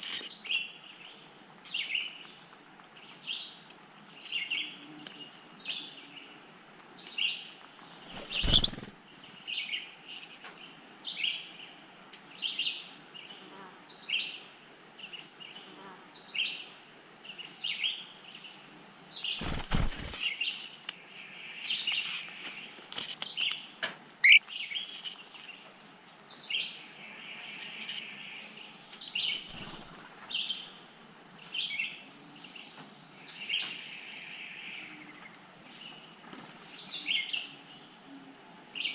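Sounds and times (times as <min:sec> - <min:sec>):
birds chirping: 0:00.0 - 0:10.4, 0:19.2 - 0:33.7.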